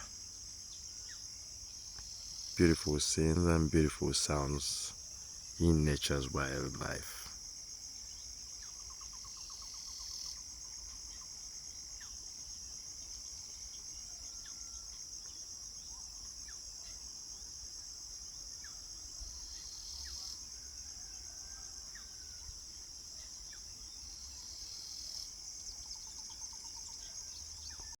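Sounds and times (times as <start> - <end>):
insect chorus trilling: 0.0 - 28.0.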